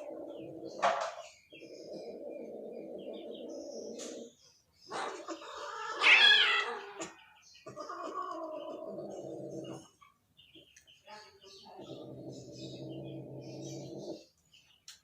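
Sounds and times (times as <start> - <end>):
cats yowling: 0.0 - 0.8, 4.9 - 9.9.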